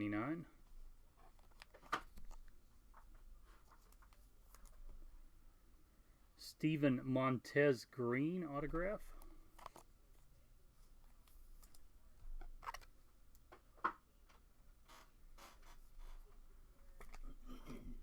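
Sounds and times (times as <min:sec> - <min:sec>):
trading cards clicking and rustling: 0:09.5 - 0:09.9, 0:12.4 - 0:13.6.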